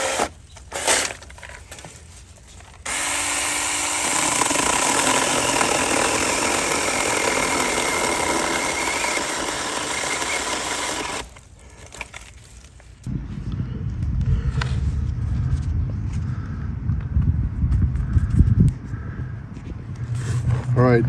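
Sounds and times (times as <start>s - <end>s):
electric chainsaw cutting wood: 0.0s - 1.2s, 2.8s - 11.4s.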